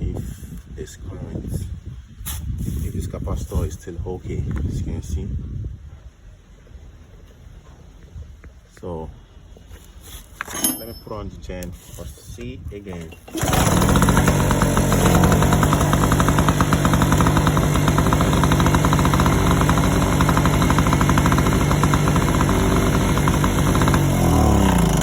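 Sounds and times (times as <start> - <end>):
generator engine running: 13.2 - 25.0.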